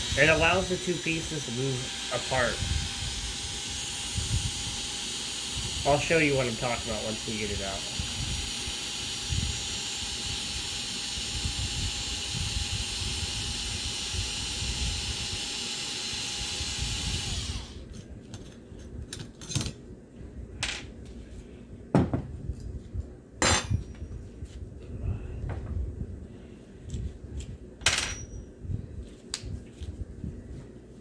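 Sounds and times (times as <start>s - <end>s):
loud knocks: 22.0s - 22.3s.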